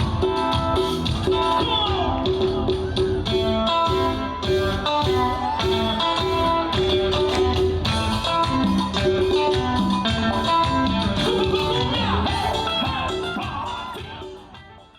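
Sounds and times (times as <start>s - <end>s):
guitar-led music with low beat: 0.0s - 14.9s.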